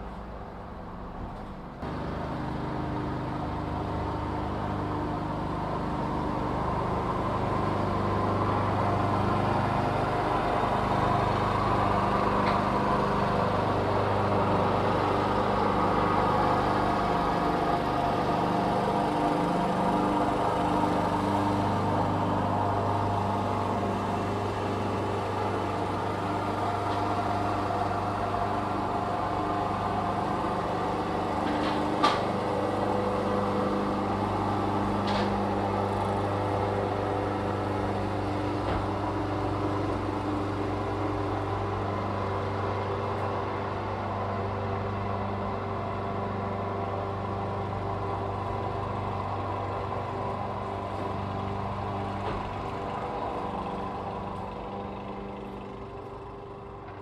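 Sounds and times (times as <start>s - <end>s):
lawn mower running: 0.0s - 57.0s.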